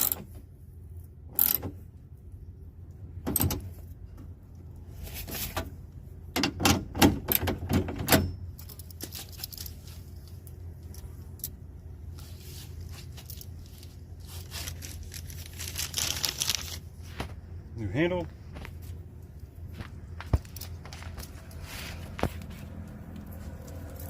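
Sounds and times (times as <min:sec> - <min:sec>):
steady low hum: 0:00.0 - 0:24.0
light ticks and scraping: 0:18.6 - 0:24.0.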